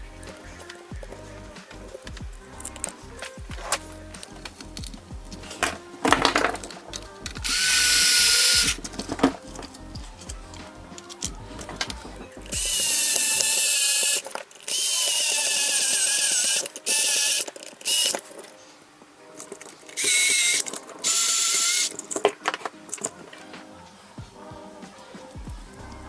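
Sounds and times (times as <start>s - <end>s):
electric screwdriver whining: 7.4s - 9.3s, 12.6s - 18.2s, 20.0s - 22.0s.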